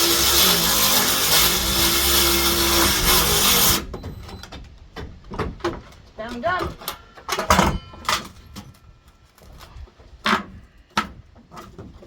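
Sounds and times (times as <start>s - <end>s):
power saw cutting wood: 0.0s - 3.9s
knocks and clatter: 2.8s - 8.8s.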